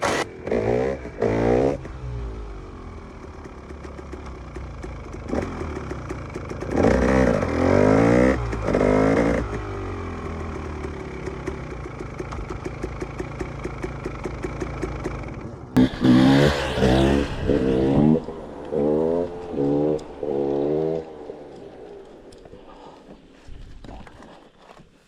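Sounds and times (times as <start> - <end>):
two-stroke engine revving: 0.0 - 23.5.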